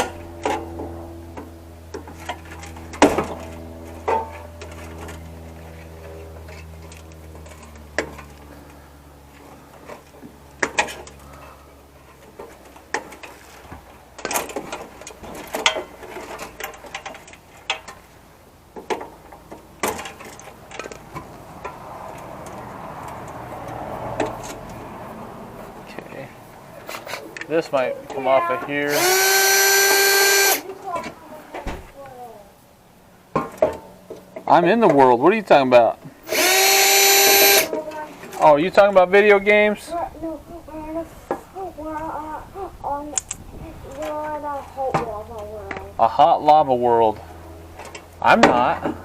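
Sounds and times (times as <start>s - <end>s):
wire cutters snipping: 28.9s - 30.6s, 36.3s - 37.8s.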